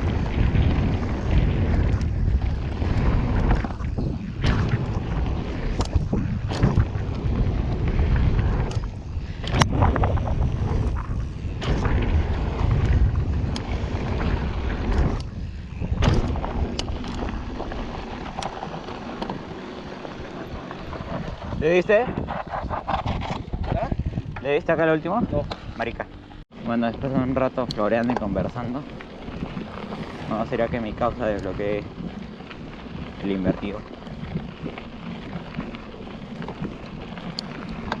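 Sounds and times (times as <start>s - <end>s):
bike knocks and rattles: 0.0s - 25.8s
wind rushing over microphone: 0.0s - 38.0s.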